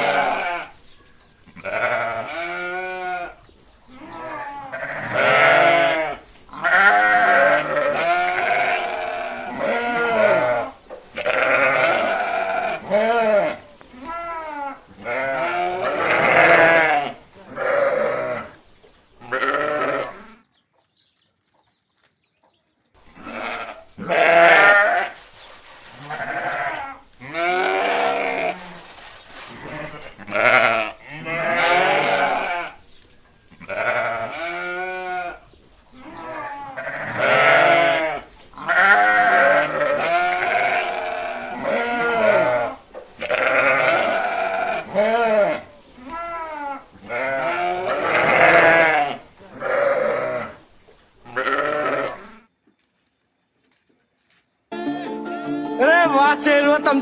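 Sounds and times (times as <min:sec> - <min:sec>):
goats bleating: 0:00.0 - 0:00.8, 0:01.5 - 0:18.6, 0:19.2 - 0:20.4, 0:23.1 - 0:25.2, 0:26.0 - 0:28.8, 0:29.5 - 0:32.8, 0:33.5 - 0:50.6, 0:51.3 - 0:52.4.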